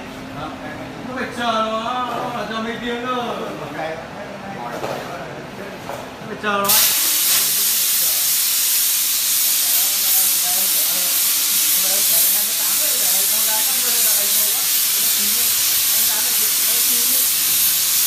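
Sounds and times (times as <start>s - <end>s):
plasma cutter hissing: 6.6s - 18.0s.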